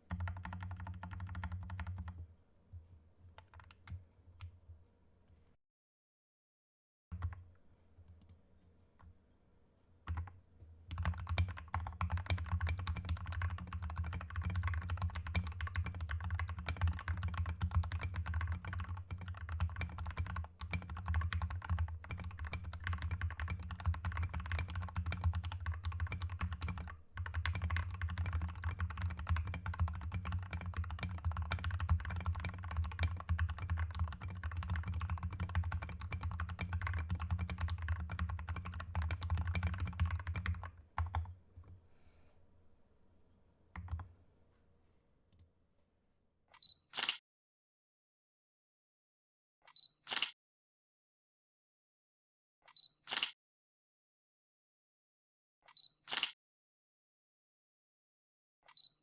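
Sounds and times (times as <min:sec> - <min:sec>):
typing on mechanical keyboard: 0:00.0 - 0:02.2, 0:10.9 - 0:41.3.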